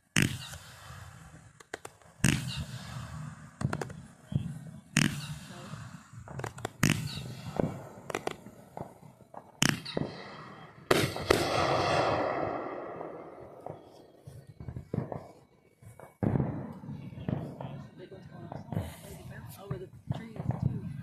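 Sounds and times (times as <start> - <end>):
small fireworks pops: 0.0 - 12.6, 13.4 - 21.0
fireworks bangs: 0.0 - 21.0.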